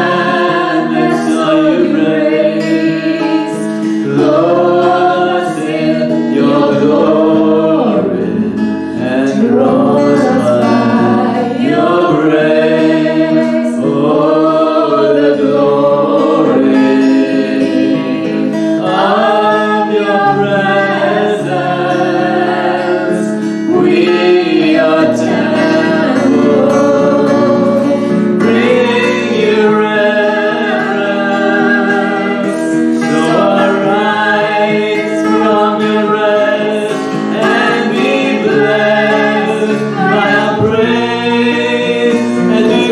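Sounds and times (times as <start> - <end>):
held instrumental chords: 0.0 - 42.9
voices singing: 0.0 - 42.9.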